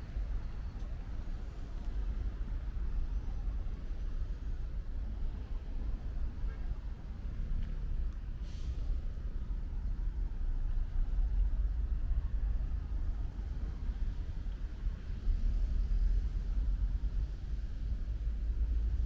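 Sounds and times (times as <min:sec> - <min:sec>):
brief hiss: 0:08.4 - 0:09.0.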